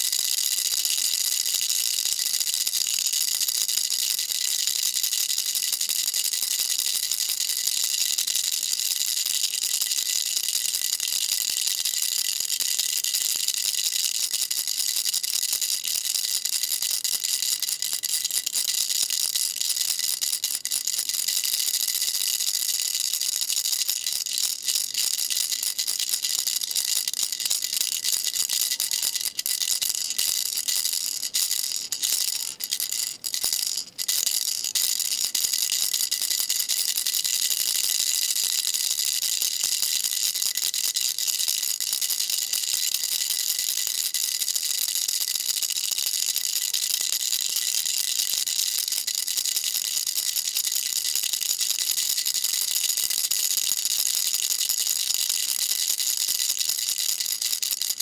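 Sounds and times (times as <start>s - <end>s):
baby rattle shaking: 0.0s - 58.0s.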